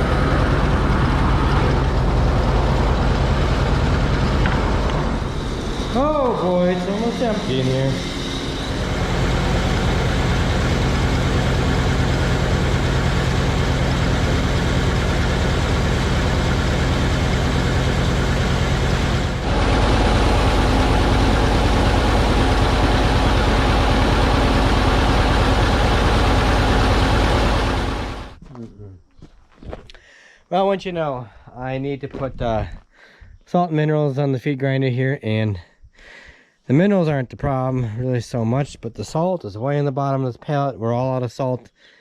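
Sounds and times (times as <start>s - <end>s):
tractor engine running: 0.0s - 28.4s.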